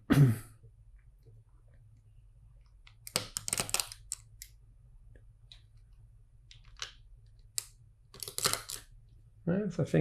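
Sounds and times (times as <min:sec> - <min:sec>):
plastic bricks clicking: 0:02.9 - 0:04.5, 0:07.6 - 0:08.9.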